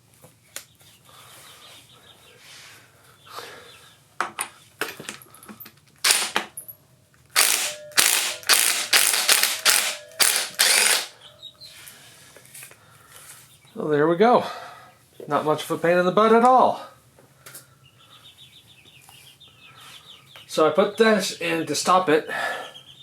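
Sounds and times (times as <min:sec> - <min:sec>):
impact wrench hammering: 0:06.0 - 0:06.5, 0:07.4 - 0:11.2
tool clicks: 0:06.0 - 0:06.5, 0:07.4 - 0:11.2.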